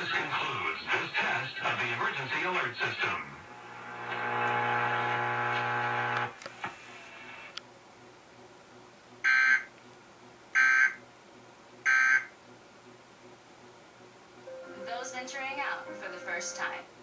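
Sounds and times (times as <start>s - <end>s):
steady buzz: 3.4s - 6.4s.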